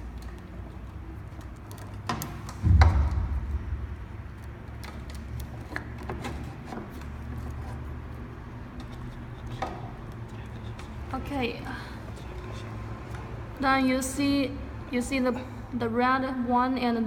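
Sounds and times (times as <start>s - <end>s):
clicks and knocks of parts handled: 0.0s - 2.7s
loud low thump: 2.6s - 4.9s
steady low hum: 2.6s - 5.6s.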